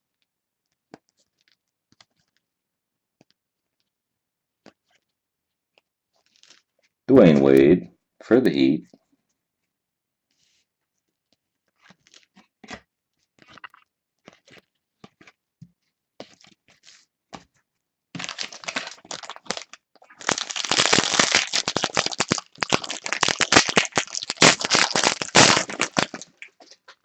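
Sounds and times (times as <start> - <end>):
plastic wrapper tearing and crinkling: 18.2 - 27.0.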